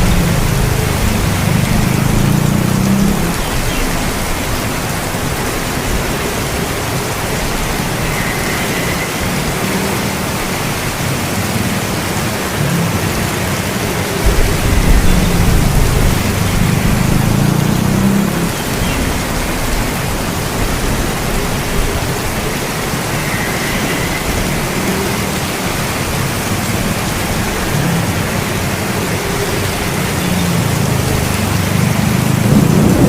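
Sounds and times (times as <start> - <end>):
rolling thunder: 0.0 - 4.5, 14.2 - 24.7, 32.1 - 33.0
heavy rain falling: 0.0 - 33.0.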